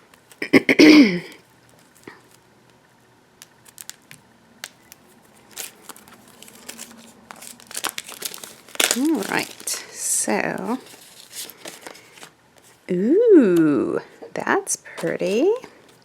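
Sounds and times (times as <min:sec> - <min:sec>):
packaging clicks and rustles: 0:03.6 - 0:12.8.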